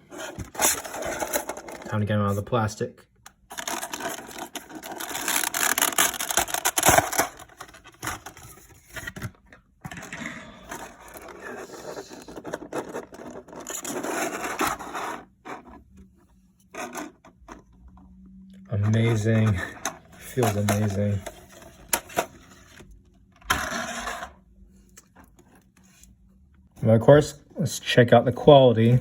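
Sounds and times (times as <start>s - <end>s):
plastic packaging crinkling: 3.5s - 8.6s.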